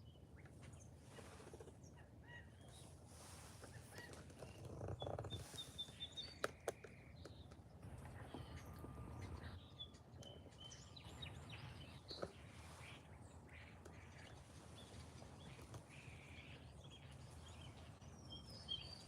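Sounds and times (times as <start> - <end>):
faint bird chirps: 0.0 - 19.0
low background rumble: 7.0 - 19.0.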